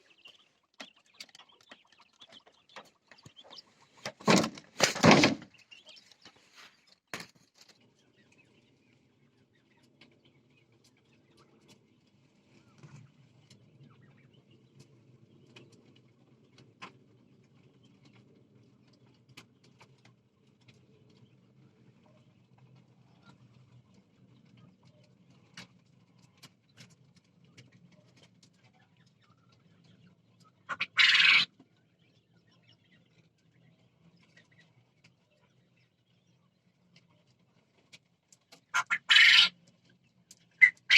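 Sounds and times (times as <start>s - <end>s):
quail harsh call: 30.7s - 31.5s, 38.8s - 39.6s, 40.6s - 40.9s.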